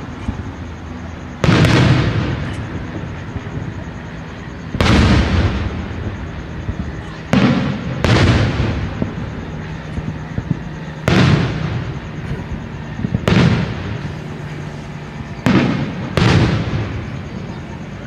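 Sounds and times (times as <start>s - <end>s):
fireworks bursting with rumble: 0.0s - 18.0s.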